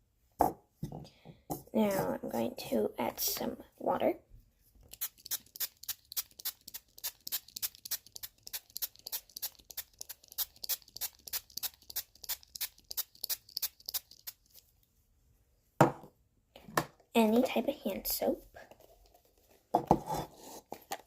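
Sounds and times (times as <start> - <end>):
spray bottle squirting water: 4.9 - 14.6.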